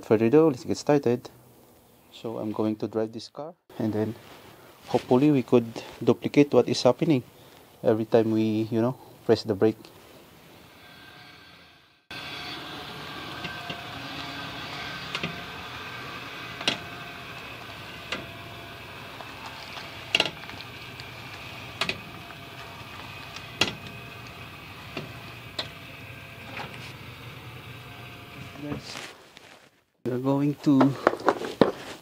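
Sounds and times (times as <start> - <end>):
minivan driving drone: 10.8 - 28.8.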